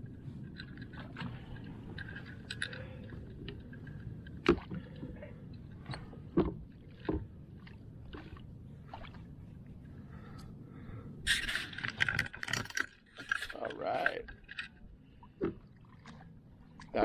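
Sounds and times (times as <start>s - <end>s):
light clicks and rattles: 0.4s - 5.2s, 11.3s - 14.8s
sharp knocks against boat: 4.4s - 4.9s, 5.8s - 7.3s, 15.4s - 16.2s.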